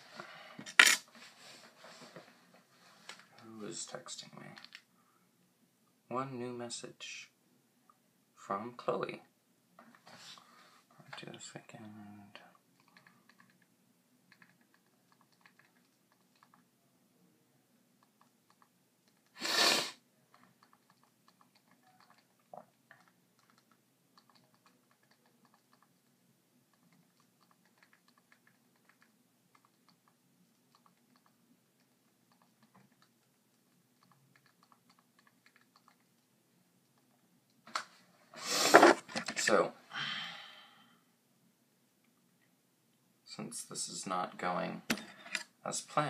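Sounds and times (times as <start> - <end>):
typing on a phone: 12.8 - 13.7, 14.3 - 16.7, 18.0 - 19.4, 20.3 - 37.1.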